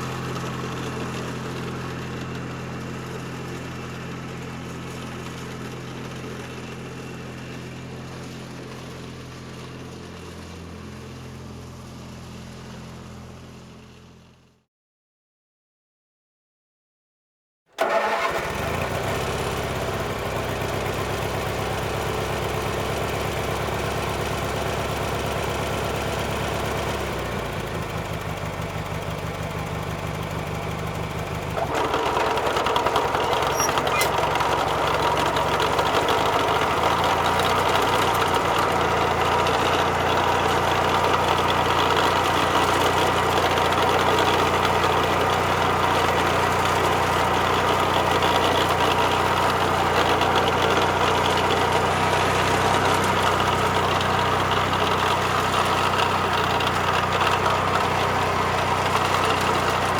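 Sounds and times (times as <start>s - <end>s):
lawn mower engine running: 0.0s - 14.2s, 17.8s - 59.9s.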